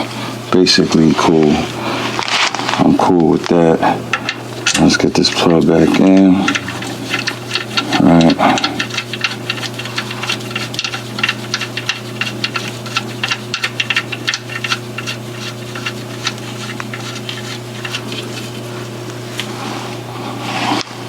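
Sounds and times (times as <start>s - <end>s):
steady low hum: 0.0s - 21.0s
drain plug clicks and rattles: 4.1s - 18.1s.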